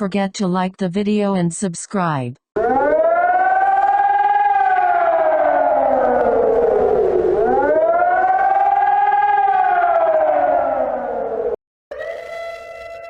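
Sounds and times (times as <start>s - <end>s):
emergency siren wailing: 2.6s - 13.0s.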